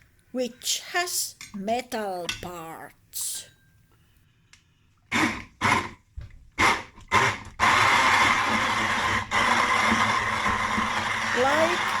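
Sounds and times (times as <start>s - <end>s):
electric blender whining: 5.1s - 6.0s, 6.6s - 12.0s.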